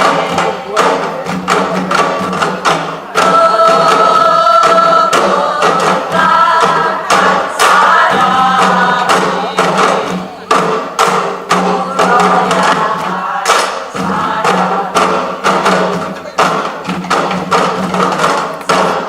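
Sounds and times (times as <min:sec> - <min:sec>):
group drum strikes: 0:00.0 - 0:19.0
pop song with sung melody: 0:02.7 - 0:16.6.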